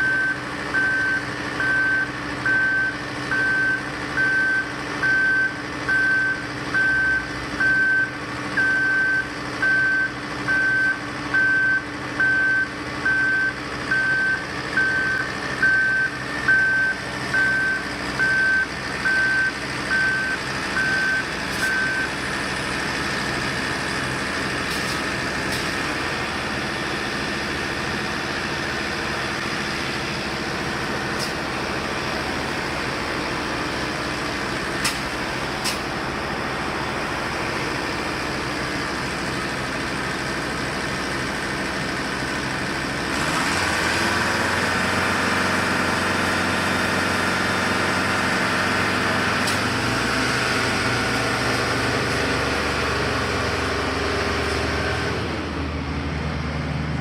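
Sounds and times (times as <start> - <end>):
reversing alarm beeping: 0.0 - 22.2
heavy engine running: 0.0 - 57.0.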